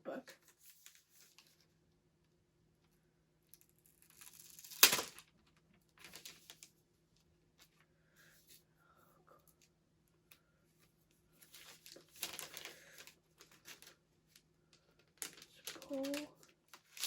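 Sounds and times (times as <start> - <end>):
packaging rustling and ripping: 3.8 - 5.3, 6.0 - 6.7, 11.4 - 14.0, 15.1 - 17.0.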